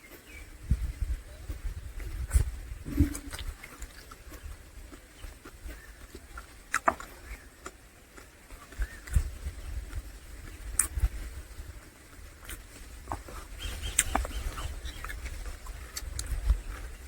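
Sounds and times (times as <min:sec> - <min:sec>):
soft low thumps: 0:00.6 - 0:04.7
person chewing and smacking: 0:02.9 - 0:11.1, 0:11.8 - 0:17.0.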